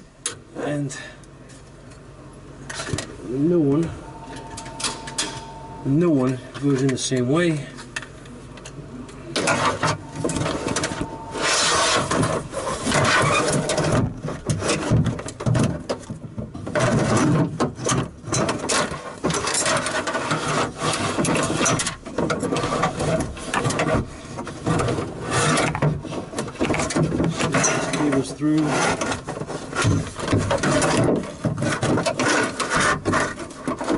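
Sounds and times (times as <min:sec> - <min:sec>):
metal part scraping inside door: 0:02.7 - 0:06.5, 0:09.4 - 0:15.0.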